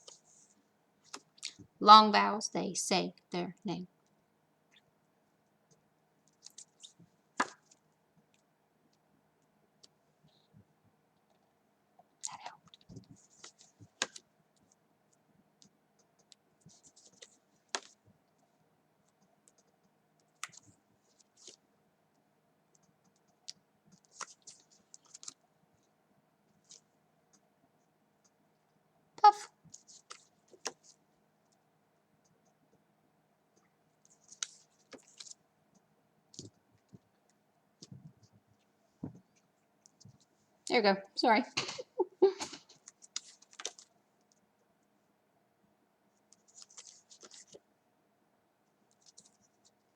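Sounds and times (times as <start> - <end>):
faint small clicks and rustles: 0.0 - 1.8, 3.9 - 28.8, 29.6 - 32.9, 33.5 - 40.8, 42.4 - 45.0, 46.1 - 47.7, 48.6 - 49.9
light scratching: 46.4 - 47.6.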